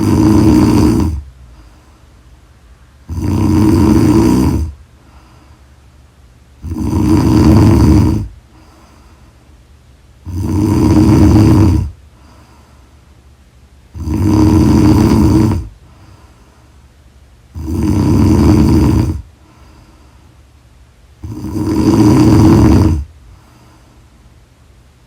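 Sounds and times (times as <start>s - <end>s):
woman snoring loudly: 0.0s - 1.3s, 3.0s - 4.8s, 6.6s - 8.4s, 10.2s - 12.0s, 14.0s - 15.8s, 17.6s - 19.3s, 21.2s - 23.1s
faint breathing: 0.0s - 6.0s, 6.6s - 9.6s, 10.4s - 13.2s, 14.2s - 17.0s, 17.6s - 20.6s, 21.2s - 24.4s.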